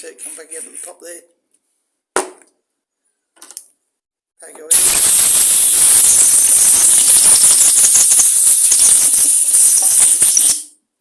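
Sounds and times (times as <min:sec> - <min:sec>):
compressed air hissing: 0:04.7 - 0:10.7.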